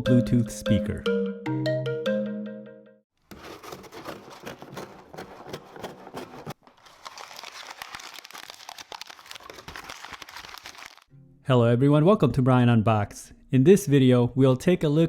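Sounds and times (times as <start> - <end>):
packaging crinkling: 3.2 - 11.1.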